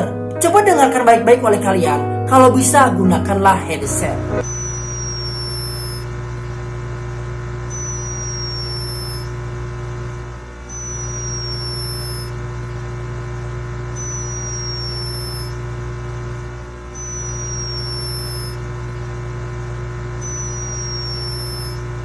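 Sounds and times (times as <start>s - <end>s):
hummingbird snoring whistle: 4.4s - 6.1s, 7.7s - 9.4s, 10.7s - 12.4s, 13.9s - 15.6s, 16.9s - 18.6s, 20.2s - 21.9s
steady low hum: 4.4s - 22.0s.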